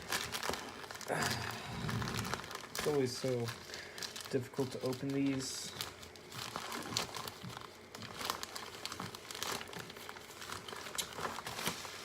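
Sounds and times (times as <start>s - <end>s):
plastic bag crinkling: 0.0s - 12.0s.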